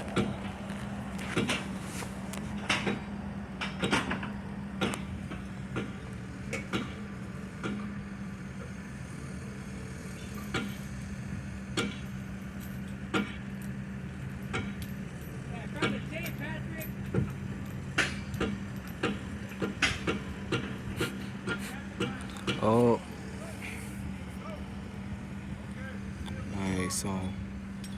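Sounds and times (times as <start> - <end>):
diesel engine humming: 0.0 - 27.9.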